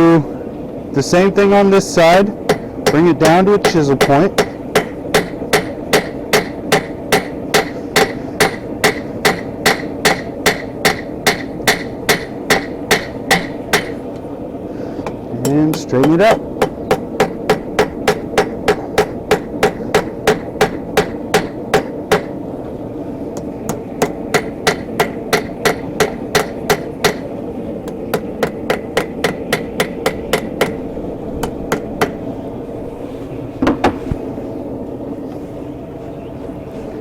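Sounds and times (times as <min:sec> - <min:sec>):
hammer striking steel on anvil: 0:02.5 - 0:14.0, 0:15.4 - 0:22.3, 0:23.4 - 0:27.3, 0:28.1 - 0:30.8.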